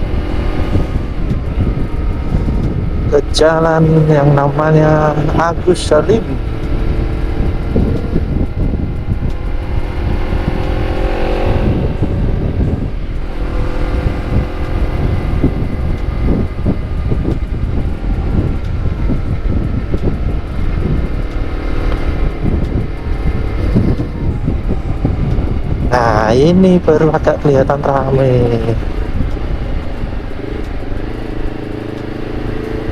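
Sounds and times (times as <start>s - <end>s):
motorcycle engine revving: 0.0s - 32.9s
wind buffeting microphone: 0.0s - 32.9s.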